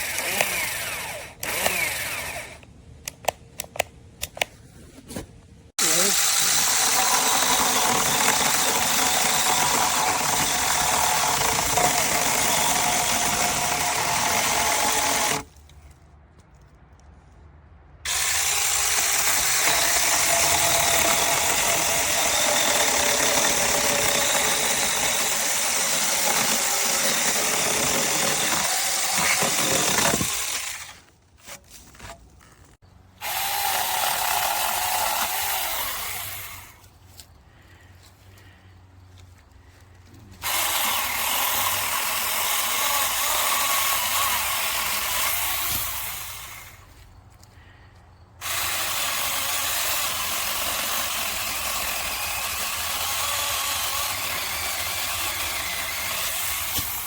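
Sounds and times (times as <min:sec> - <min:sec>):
electric chainsaw running: 0:00.0 - 0:02.6, 0:05.8 - 0:15.5, 0:18.1 - 0:31.0, 0:33.2 - 0:36.7, 0:40.4 - 0:46.9, 0:48.4 - 0:57.0.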